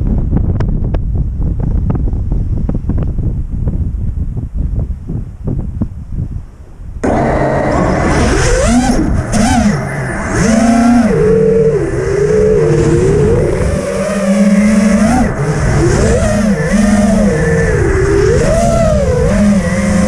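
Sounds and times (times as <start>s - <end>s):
drone motors whining: 7.0s - 20.0s.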